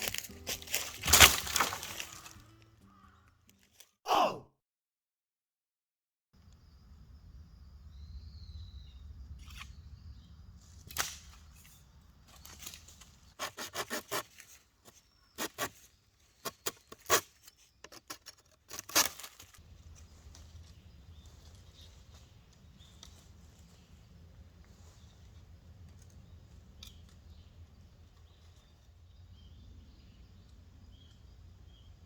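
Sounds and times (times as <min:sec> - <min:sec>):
twigs and leaves crackling: 0:00.0 - 0:04.0, 0:10.6 - 0:13.4, 0:14.1 - 0:29.0.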